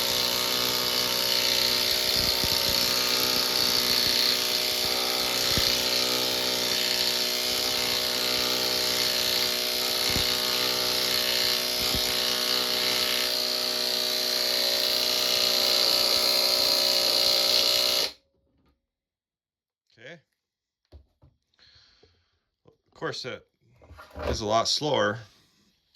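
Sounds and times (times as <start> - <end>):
impact wrench hammering: 0.0 - 18.2.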